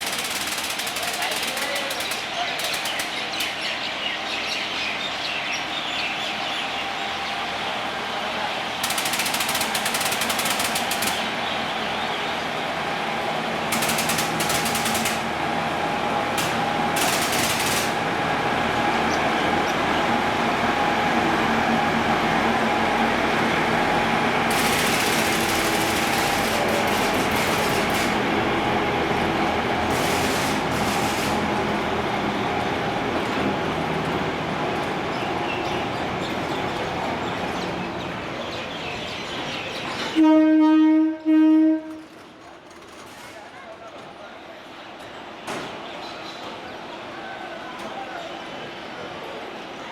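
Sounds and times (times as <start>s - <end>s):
diesel locomotive running slowly: 0.0s - 49.9s
birds chirping: 34.6s - 40.2s.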